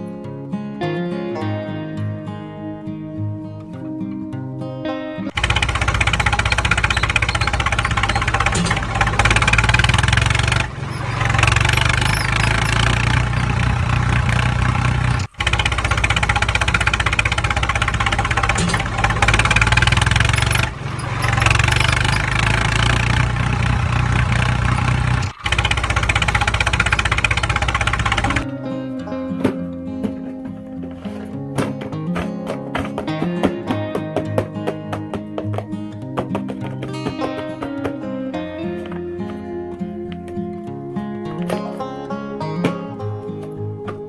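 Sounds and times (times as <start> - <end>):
tractor engine starting and running: 5.3 - 28.5.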